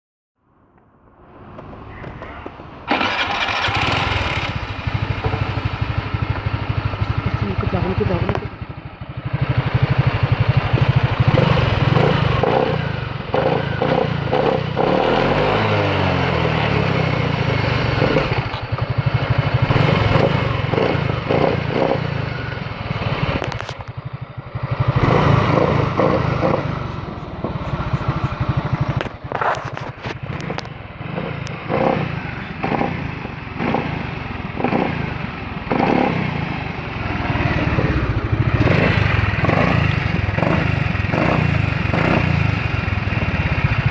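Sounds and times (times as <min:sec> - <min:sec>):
engine running: 0:01.5 - 0:43.9
clattering scraping noise: 0:27.4 - 0:30.8.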